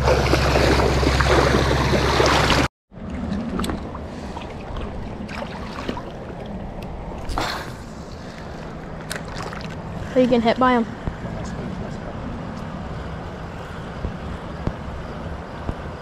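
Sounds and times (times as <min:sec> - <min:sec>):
loud water rush: 0:00.0 - 0:02.7
water trickling and sloshing: 0:00.0 - 0:11.2.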